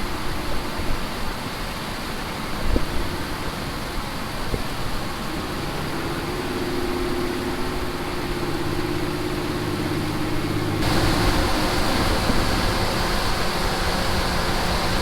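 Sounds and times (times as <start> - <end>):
large engine humming: 5.8 - 15.0.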